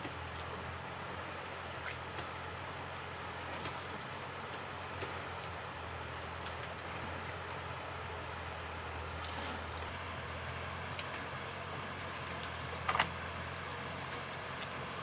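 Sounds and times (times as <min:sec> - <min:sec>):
faint high chirp: 0:09.2 - 0:09.9.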